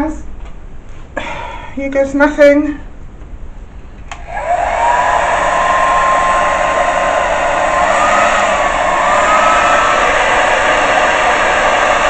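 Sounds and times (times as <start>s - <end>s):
hair dryer running: 4.1s - 12.0s.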